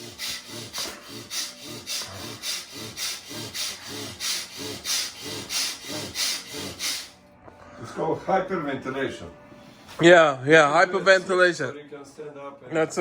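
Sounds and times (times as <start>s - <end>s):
forceful rapid nasal breathing: 0.0s - 7.2s.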